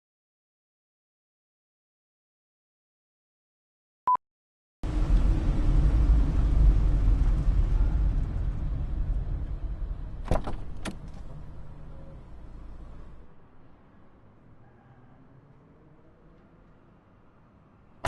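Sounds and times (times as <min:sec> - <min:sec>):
low vehicle rumble: 0:04.8 - 0:16.6.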